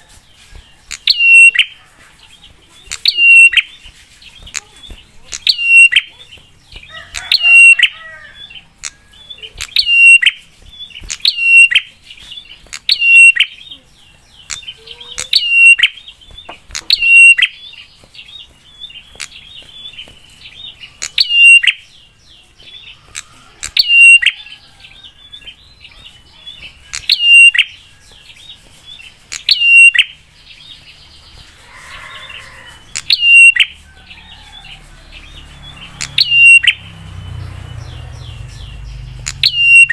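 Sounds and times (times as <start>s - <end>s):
bird calling loudly: 0.9s - 1.8s, 2.9s - 3.7s, 4.5s - 11.9s, 12.7s - 13.6s, 14.5s - 17.9s, 20.9s - 21.8s, 23.0s - 24.5s, 26.8s - 27.8s, 29.3s - 30.2s, 31.5s - 33.7s, 35.9s - 36.8s, 38.2s - 39.9s
other birds answering: 6.8s - 9.0s, 31.6s - 34.8s.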